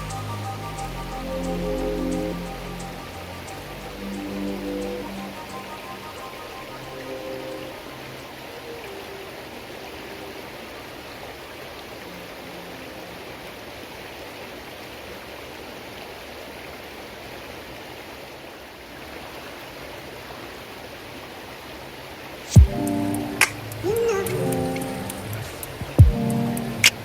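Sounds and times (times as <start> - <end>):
faint music notes: 0.0 - 11.4
running water rushing: 0.0 - 27.0.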